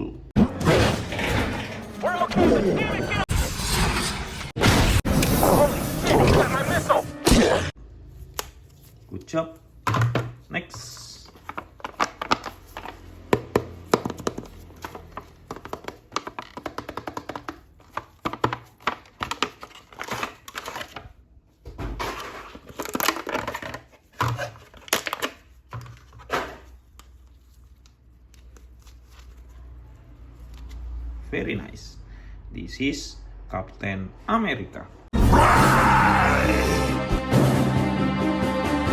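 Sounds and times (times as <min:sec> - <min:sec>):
plastic packaging crinkling: 0:11.0 - 0:21.2, 0:22.5 - 0:26.2.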